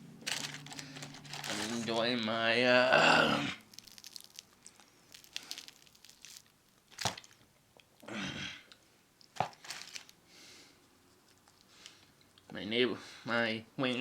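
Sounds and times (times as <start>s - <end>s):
chewing with crunches and clicks: 11.2s - 12.5s.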